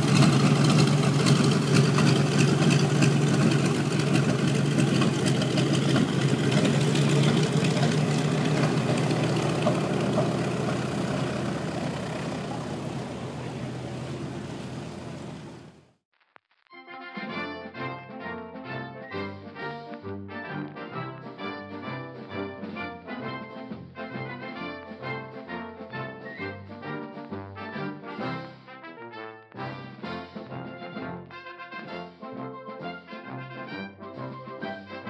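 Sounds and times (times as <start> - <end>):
piston aircraft engine running: 0.0 - 15.8.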